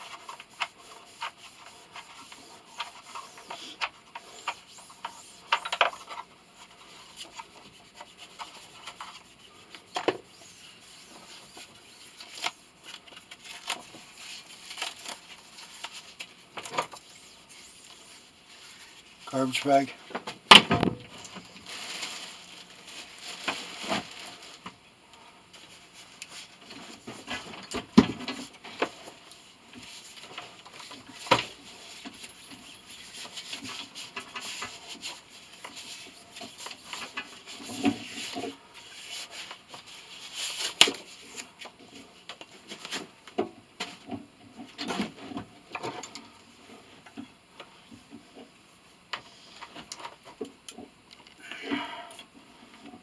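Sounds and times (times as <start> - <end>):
rubbing and rustling: 0.0 - 19.6, 20.8 - 24.8, 25.5 - 43.2.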